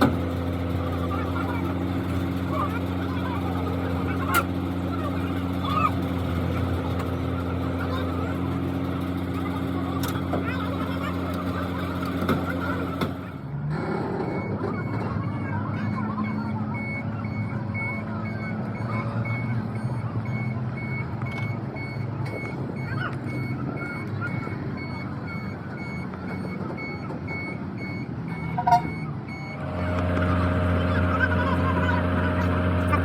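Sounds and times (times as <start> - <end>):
low running engine: 0.0 - 33.0
backup alarm beeping: 14.3 - 33.0.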